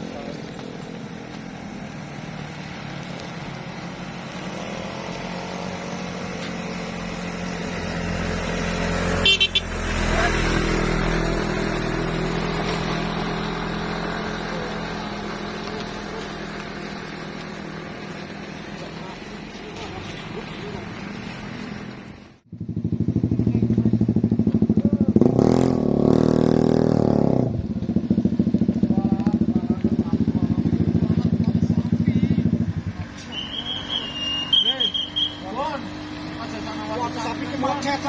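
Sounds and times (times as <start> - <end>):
vehicle engine passing: 0.0 - 38.0
short sharp horn toot: 9.2 - 9.8, 33.2 - 35.5.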